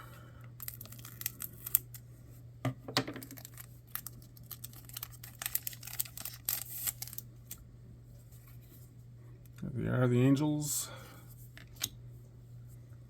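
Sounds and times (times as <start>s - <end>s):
steady low hum: 0.0s - 13.0s
trading cards rustling and sliding: 3.2s - 7.2s.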